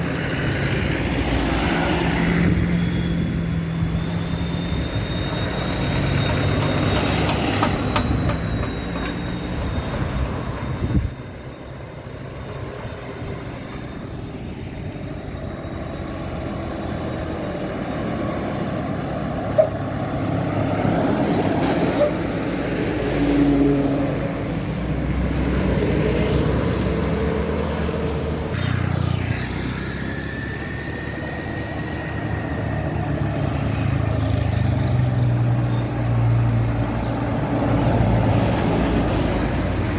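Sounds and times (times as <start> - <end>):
buses and trucks driving past: 0.0 - 39.9.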